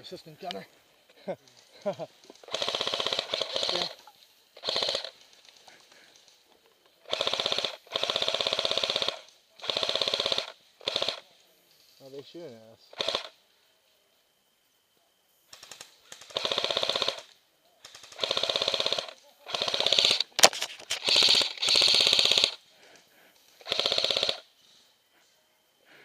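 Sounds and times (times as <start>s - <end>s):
airsoft gun firing bursts: 2.4s - 5.2s, 7.0s - 11.3s, 12.9s - 13.4s, 15.5s - 22.6s, 23.4s - 24.5s.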